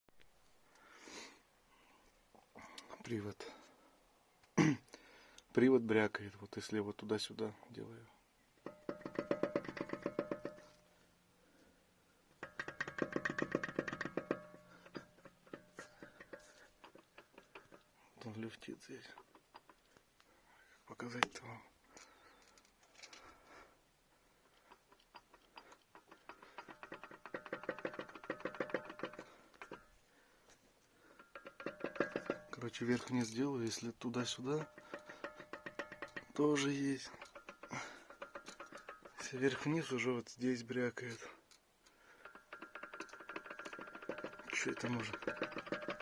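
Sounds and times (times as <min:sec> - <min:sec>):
drive shaft clacking metallically: 0:08.6 - 0:10.8, 0:12.4 - 0:19.8, 0:24.7 - 0:30.0, 0:31.0 - 0:40.2, 0:42.0 - 0:46.0.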